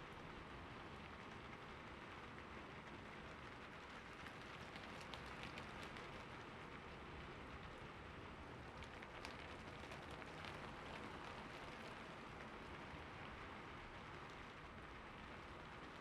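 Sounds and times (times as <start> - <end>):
rain pattering on a rooftop: 0.0 - 16.0.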